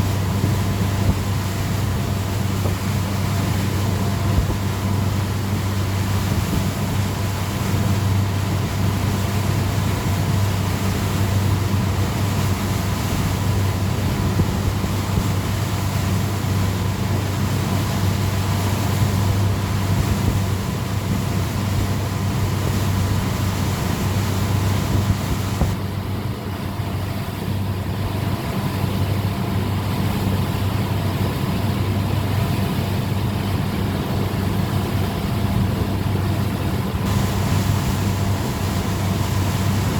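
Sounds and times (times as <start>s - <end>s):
boat engine droning: 0.0s - 39.9s.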